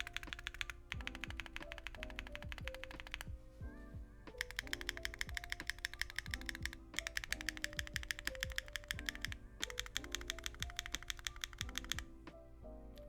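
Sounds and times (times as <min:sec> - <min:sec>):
fast typing on mechanical keyboard: 0:00.0 - 0:03.4, 0:04.3 - 0:12.2
background music: 0:00.0 - 0:13.0.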